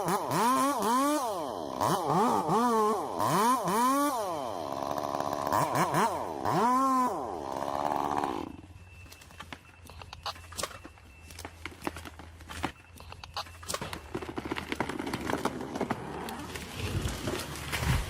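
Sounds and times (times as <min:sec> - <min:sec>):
chainsaw engine revving: 0:00.0 - 0:08.6, 0:14.0 - 0:17.6.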